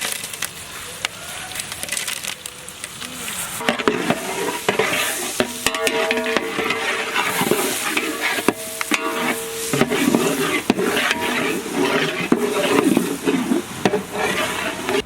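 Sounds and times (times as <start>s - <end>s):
spices sizzling in hot oil: 0.0s - 15.0s
spoon knocking against pan: 3.6s - 12.7s.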